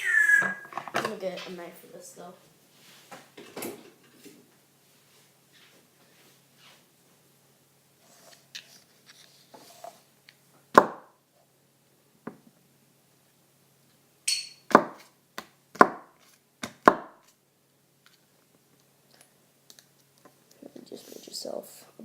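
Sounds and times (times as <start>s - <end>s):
knife chopping on hard surface: 14.7s - 15.1s, 15.8s - 17.3s.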